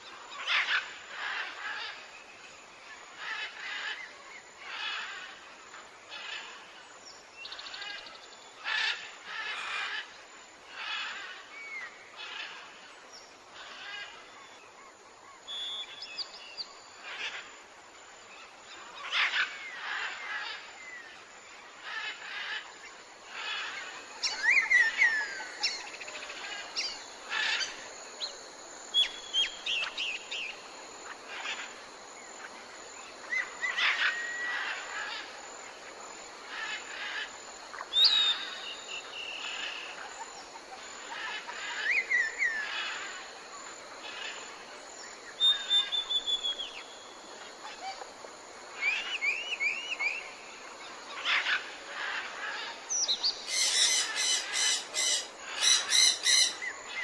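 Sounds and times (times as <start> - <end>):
birds chirping and trilling: 18.4 - 35.5, 36.4 - 48.1, 48.7 - 57.0.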